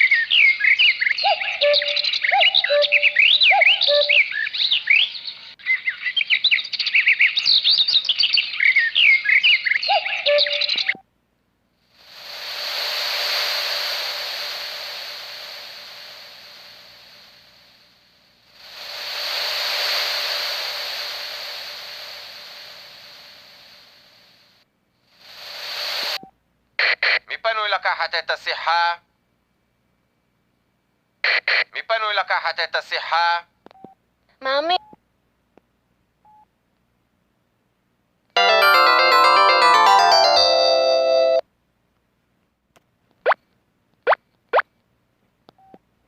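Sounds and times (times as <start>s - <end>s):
hissing ringtone from phone speaker: 12.0s - 17.4s, 18.6s - 24.0s, 25.2s - 26.2s, 38.4s - 41.4s
polyphonic ringtone melody: 38.4s - 41.4s.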